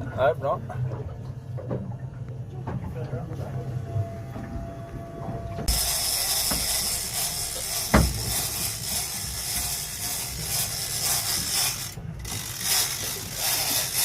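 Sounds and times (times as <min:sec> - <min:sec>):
fishing reel drag screaming: 0:05.7 - 0:14.0.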